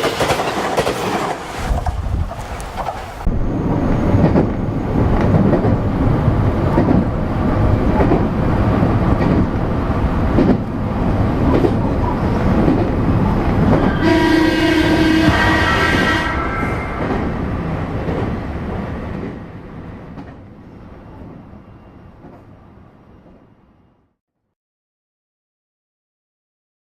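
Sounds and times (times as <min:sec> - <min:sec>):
train wheels rumbling on track: 0:00.0 - 0:23.6
train horn: 0:13.7 - 0:17.2.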